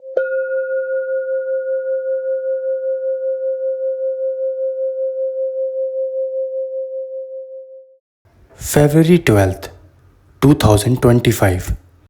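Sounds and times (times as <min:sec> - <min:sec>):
singing bowl ringing: 0:00.0 - 0:08.0.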